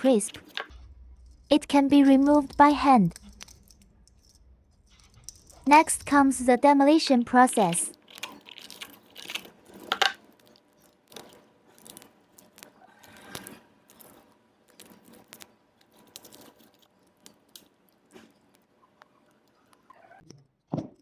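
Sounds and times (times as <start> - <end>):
small clicks: 7.6 - 20.3.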